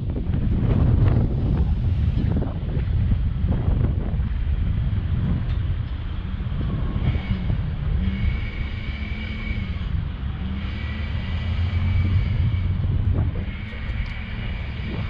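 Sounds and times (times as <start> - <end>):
boat engines droning: 0.0 - 15.0
high engine whine: 0.0 - 15.0.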